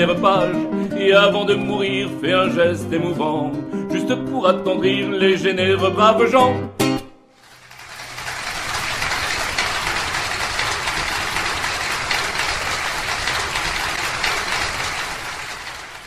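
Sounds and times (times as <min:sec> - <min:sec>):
audience applauding: 0:07.4 - 0:16.0.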